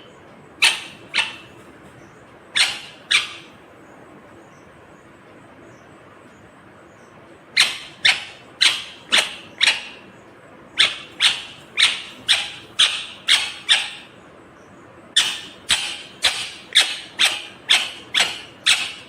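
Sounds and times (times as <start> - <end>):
parakeet calling: 0.0 - 3.6, 7.5 - 19.0.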